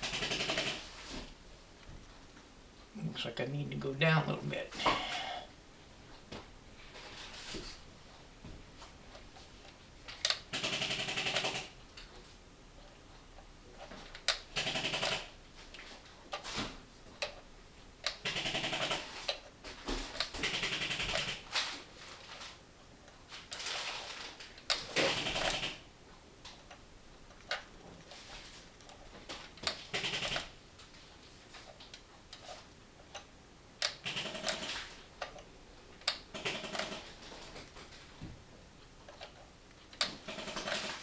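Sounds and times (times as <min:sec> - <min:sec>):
airsoft gun firing bursts: 0:00.0 - 0:00.9, 0:10.4 - 0:11.8, 0:14.5 - 0:15.4, 0:18.2 - 0:19.2, 0:20.4 - 0:21.5, 0:24.8 - 0:25.9, 0:29.8 - 0:30.6, 0:34.0 - 0:35.0, 0:36.2 - 0:37.1.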